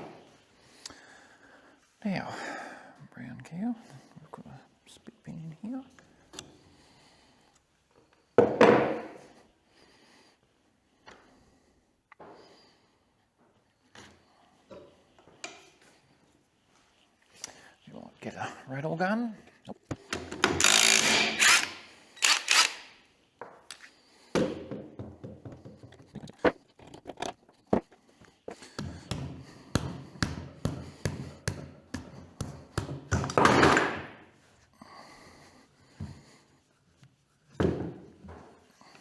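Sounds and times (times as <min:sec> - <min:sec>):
air impact wrench rattling: 0:20.2 - 0:23.0.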